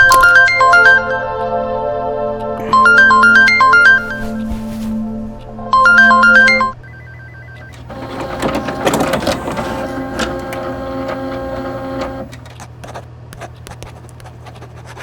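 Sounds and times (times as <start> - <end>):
phone ringtone melody: 0.0 - 1.7, 2.6 - 4.2, 5.7 - 12.1
printer running: 7.8 - 12.6.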